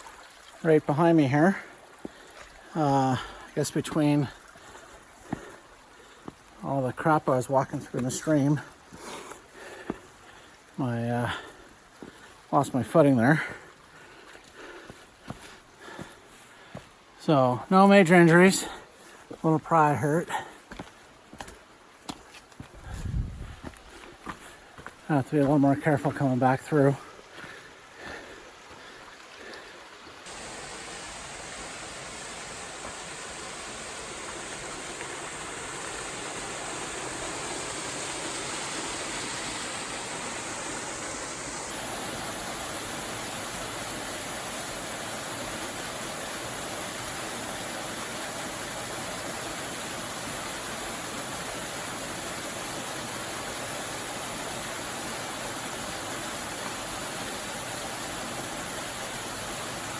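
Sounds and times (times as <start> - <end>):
waterfall rushing: 0.0 - 16.0, 24.2 - 59.9.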